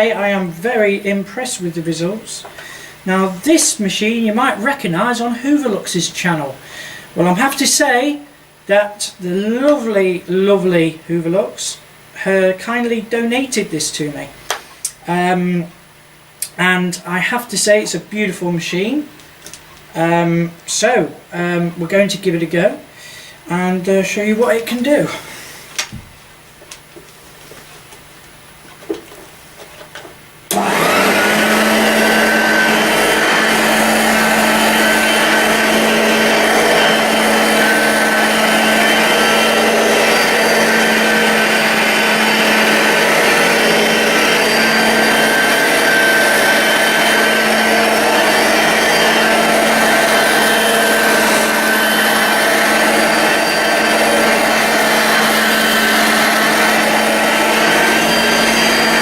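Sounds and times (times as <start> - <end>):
vacuum cleaner running: 0.0 - 15.7, 22.5 - 26.1, 29.9 - 59.0.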